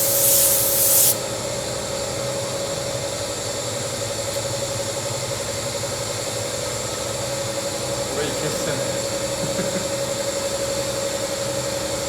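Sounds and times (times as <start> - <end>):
small motor humming: 0.0 - 1.2.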